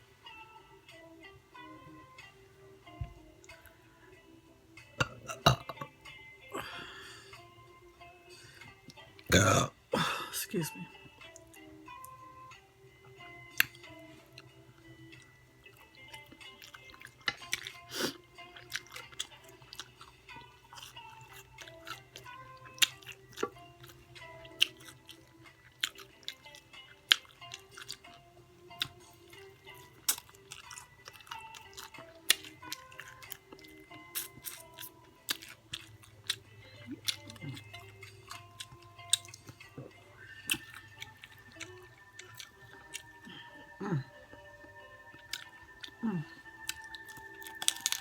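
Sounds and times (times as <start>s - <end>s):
soft background music: 0.0s - 48.0s
crunchy chewing: 15.1s - 39.7s, 40.4s - 43.1s, 45.2s - 46.0s, 46.6s - 48.0s.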